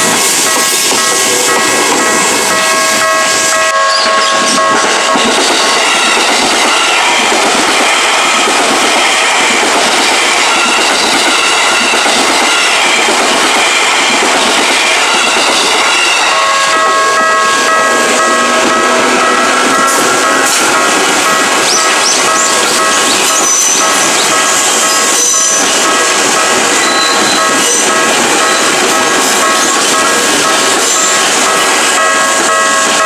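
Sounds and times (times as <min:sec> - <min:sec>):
level crossing warning bell: 0:00.0 - 0:33.0
train wheels clattering on rails: 0:00.0 - 0:33.0.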